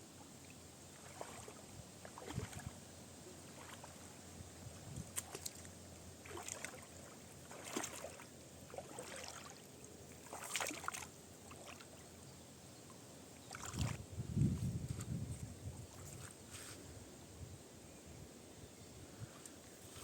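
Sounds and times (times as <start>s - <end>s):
water splashing: 0.9s - 2.8s, 3.5s - 4.0s, 5.1s - 12.0s, 13.5s - 14.0s.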